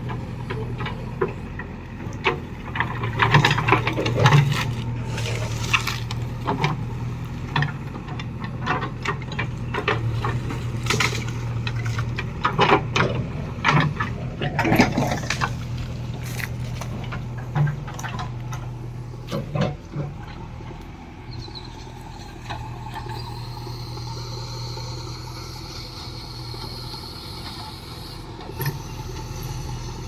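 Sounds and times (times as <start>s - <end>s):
loader bucket knocks and scrapes: 0.0s - 21.0s
diesel engine running: 0.0s - 30.0s.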